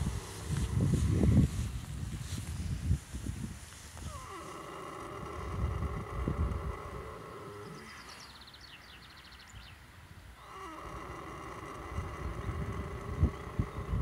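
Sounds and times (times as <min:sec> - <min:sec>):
horse snoring: 0:00.0 - 0:01.3, 0:04.0 - 0:08.1, 0:10.4 - 0:14.0.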